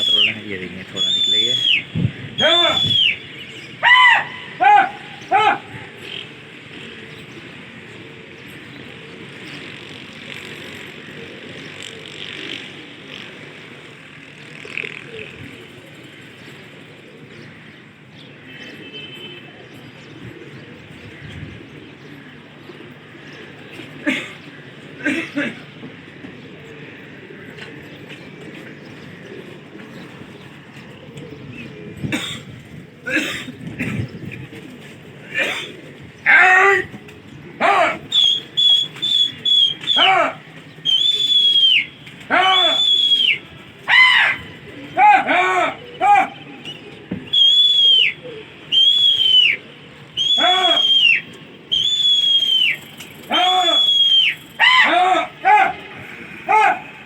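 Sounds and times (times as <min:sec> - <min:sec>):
distant city traffic hum: 0:00.0 - 0:57.0
outdoor background noise: 0:00.0 - 0:57.0
person coughing: 0:24.0 - 0:24.4, 0:25.0 - 0:25.6, 0:32.0 - 0:34.2, 0:35.3 - 0:35.8.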